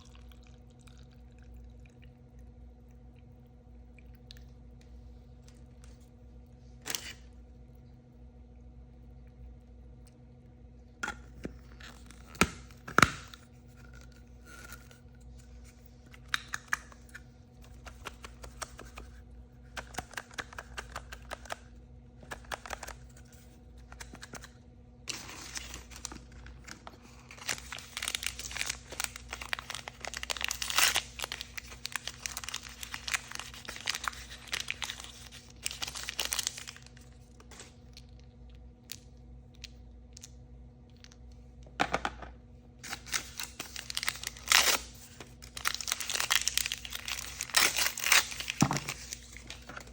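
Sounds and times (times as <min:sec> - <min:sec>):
packaging being torn and crinkled: 0:11.0 - 0:38.2, 0:42.8 - 0:49.9.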